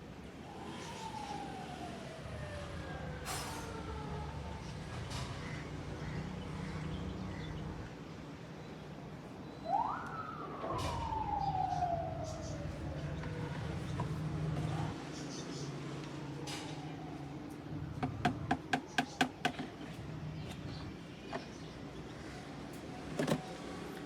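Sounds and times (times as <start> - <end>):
siren wailing: 0.3 - 5.0, 9.4 - 15.0, 16.0 - 18.5.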